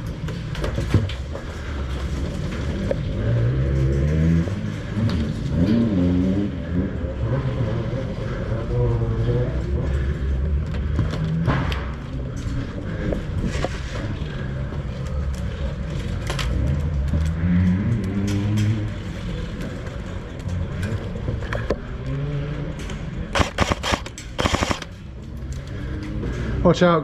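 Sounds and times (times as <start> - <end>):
airsoft gun firing bursts: 23.4 - 25.0.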